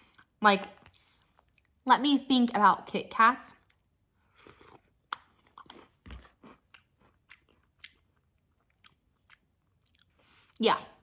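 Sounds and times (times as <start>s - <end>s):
chewing cereal crunches: 3.6s - 10.3s.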